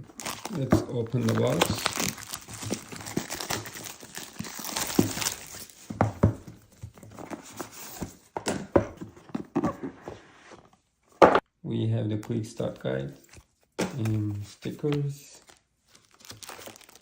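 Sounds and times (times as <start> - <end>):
cardboard box rustling: 0.1 - 10.8.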